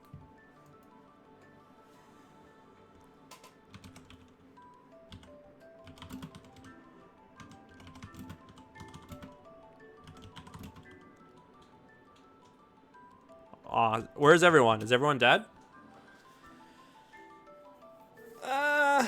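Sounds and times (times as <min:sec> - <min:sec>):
soft background music: 0:00.0 - 0:19.0
typing on computer keyboard: 0:03.3 - 0:04.4, 0:05.1 - 0:06.7, 0:07.4 - 0:09.4, 0:10.0 - 0:13.2.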